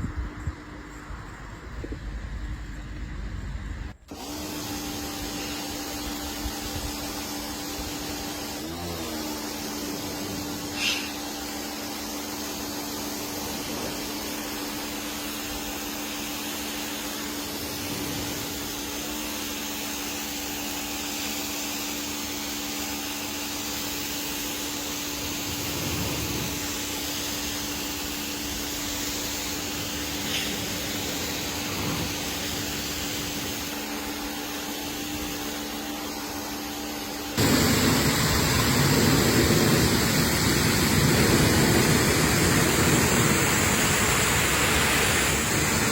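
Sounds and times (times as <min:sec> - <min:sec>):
cleaning machine motor humming: 0:04.1 - 0:45.9
rushing noise: 0:37.4 - 0:45.9.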